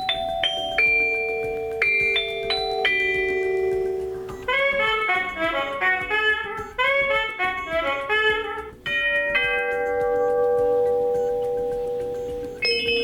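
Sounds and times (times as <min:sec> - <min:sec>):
electronic door chime: 0:00.0 - 0:04.5, 0:08.9 - 0:13.0.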